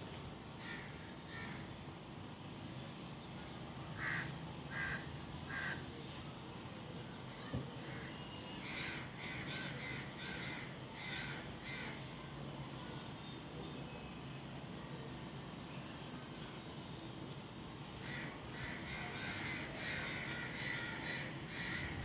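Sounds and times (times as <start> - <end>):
bird calling harshly: 18.0 - 22.0.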